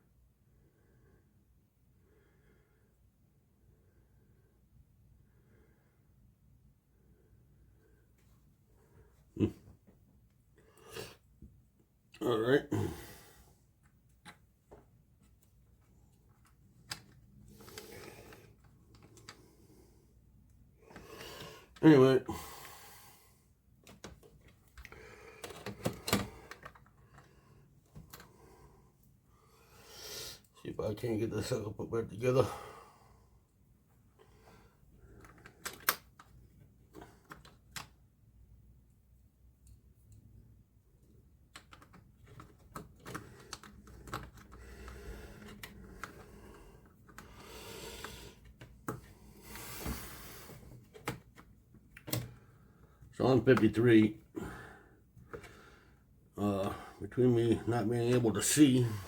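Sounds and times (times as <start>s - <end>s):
small clicks of parts handled: 16.3s - 17.9s, 35.2s - 37.9s, 50.9s - 52.4s.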